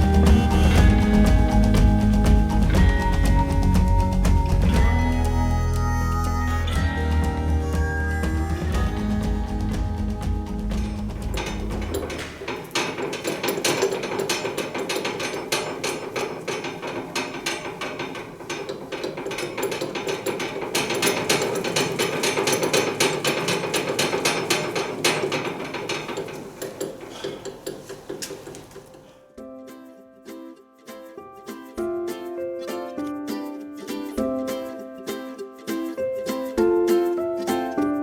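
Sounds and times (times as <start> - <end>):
metal knocking and rattling: 0.0 - 5.3, 6.8 - 29.1.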